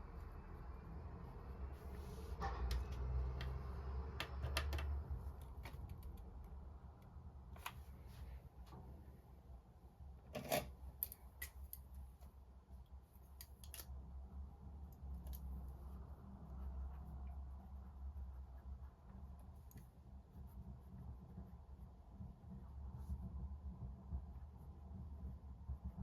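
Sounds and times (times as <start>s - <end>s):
background traffic rumble: 0.0s - 26.0s
pen and paper clicks and taps: 2.6s - 6.3s.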